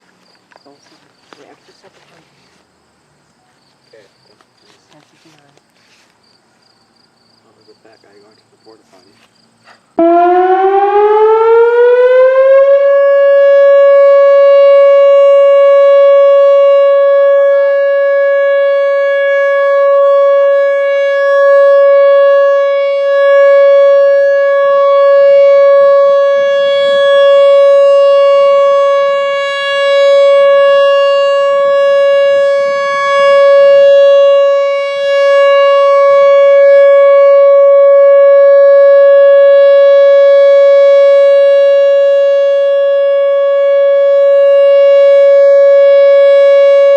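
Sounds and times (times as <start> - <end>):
warning siren steady tone: 10.0 - 46.9.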